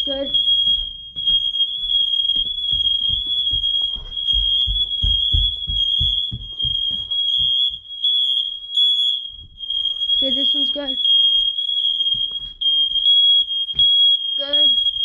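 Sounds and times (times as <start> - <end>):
smoke alarm tone: 0.0 - 15.0
low thumps: 2.7 - 7.6.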